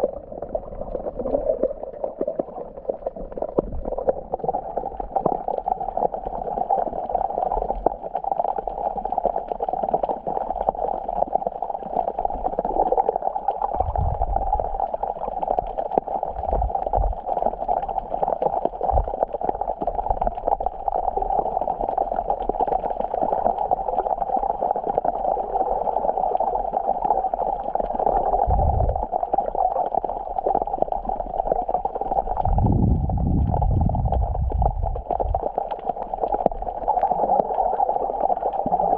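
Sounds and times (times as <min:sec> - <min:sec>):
sea water washing and gurgling: 0:00.0 - 0:38.9
low thuds: 0:28.5 - 0:29.0.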